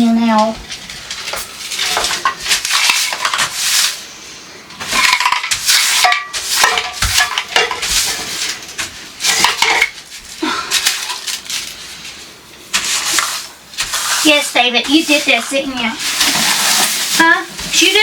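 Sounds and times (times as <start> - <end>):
dishes and cutlery clattering: 4.8 - 8.6, 9.2 - 10.0.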